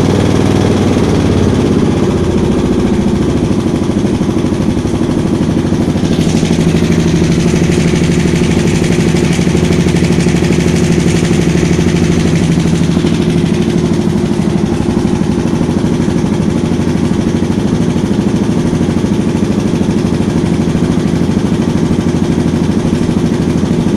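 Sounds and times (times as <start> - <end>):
motorcycle engine idling with rattle: 0.0 - 23.9.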